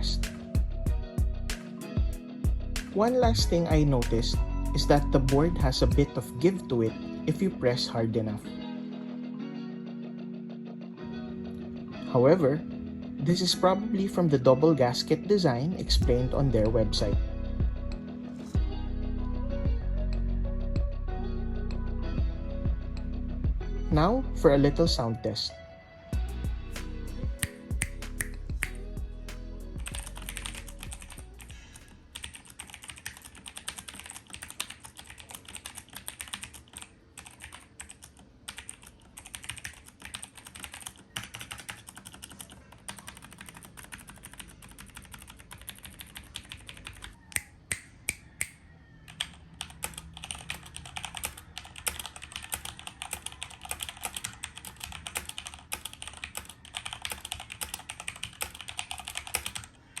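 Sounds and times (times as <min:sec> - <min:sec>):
mechanical keyboard typing: 0:29.8 - 0:31.2, 0:32.1 - 0:47.2, 0:49.1 - 1:00.0.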